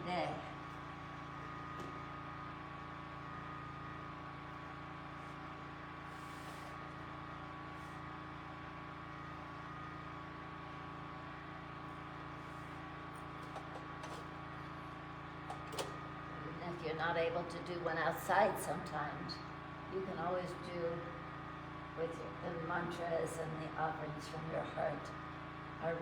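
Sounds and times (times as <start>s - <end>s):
generator engine hum: 0.0s - 26.0s.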